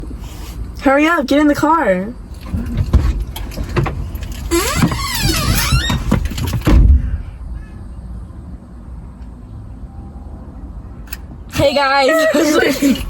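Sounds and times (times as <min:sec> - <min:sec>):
car door squeaking: 0:02.4 - 0:07.7.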